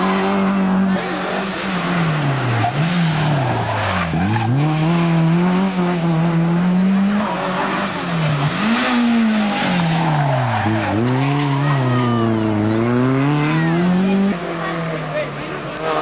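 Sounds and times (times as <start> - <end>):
rally car engine at high revs: 0.0 - 16.0.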